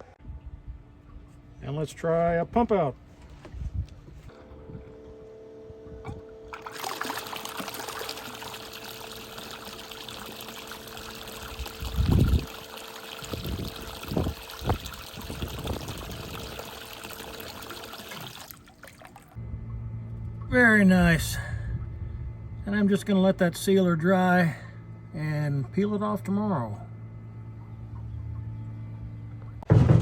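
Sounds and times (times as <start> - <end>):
electric pump humming: 4.1 - 29.8
water gushing: 6.5 - 19.4.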